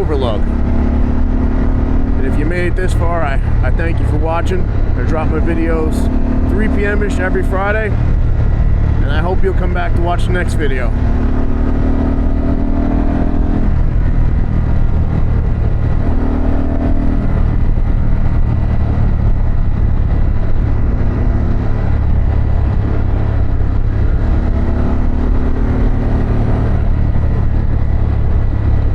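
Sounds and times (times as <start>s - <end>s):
motorcycle engine revving: 0.0s - 28.9s.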